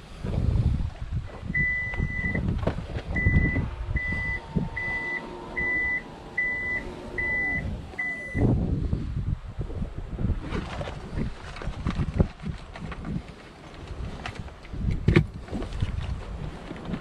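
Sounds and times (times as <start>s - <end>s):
engine running: 0.0s - 9.5s
wind rumble on microphone: 0.0s - 17.0s
reversing alarm beeping: 1.6s - 2.4s, 3.2s - 8.5s.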